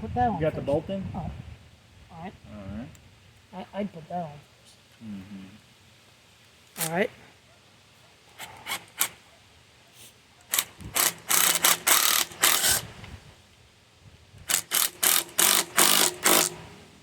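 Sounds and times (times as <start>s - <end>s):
rasping tightening strokes: 8.4s - 9.2s, 10.5s - 12.9s, 14.4s - 16.8s.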